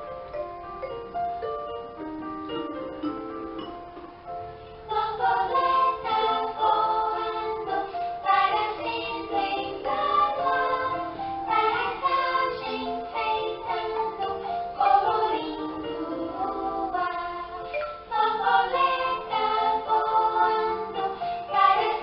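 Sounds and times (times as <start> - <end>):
instrumental accompaniment: 0.0 - 22.0
voices singing children's song: 4.9 - 22.0.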